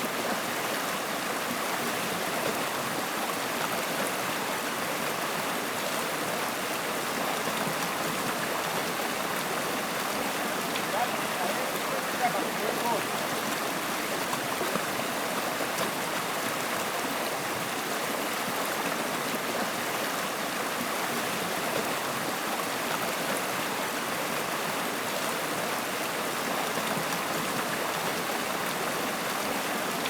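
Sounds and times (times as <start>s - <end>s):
stream running water: 0.0s - 30.0s.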